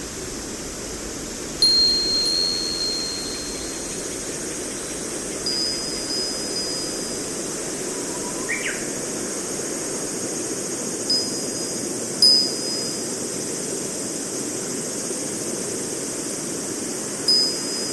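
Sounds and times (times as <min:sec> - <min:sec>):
high clear chime tones: 0:01.6 - 0:03.9
high chirp: 0:01.6 - 0:09.0.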